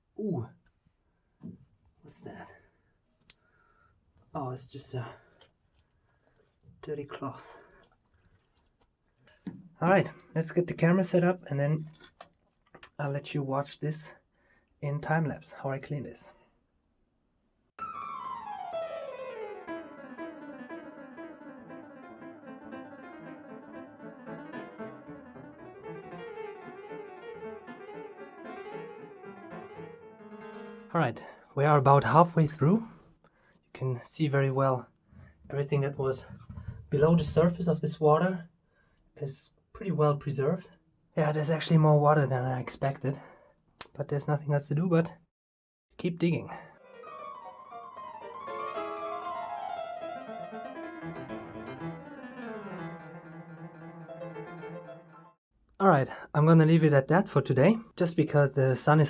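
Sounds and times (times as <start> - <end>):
classical keyboard tune: 17.8 - 31.0, 46.8 - 55.4
piano: 17.8 - 33.0, 35.2 - 38.0, 46.7 - 55.4.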